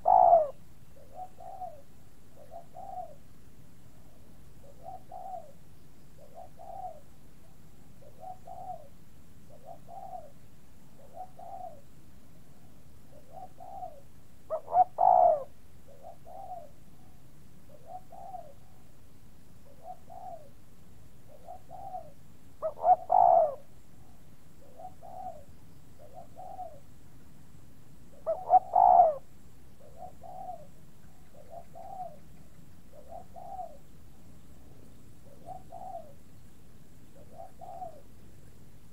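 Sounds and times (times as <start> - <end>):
pigeons cooing: 0.0 - 3.2, 4.1 - 5.6, 6.2 - 7.0, 8.0 - 8.9, 9.5 - 10.3, 11.0 - 11.8, 13.1 - 16.7, 17.7 - 18.8, 19.7 - 20.5, 21.3 - 23.7, 24.6 - 26.8, 28.2 - 32.3, 32.9 - 33.8, 35.2 - 36.2, 37.2 - 38.1.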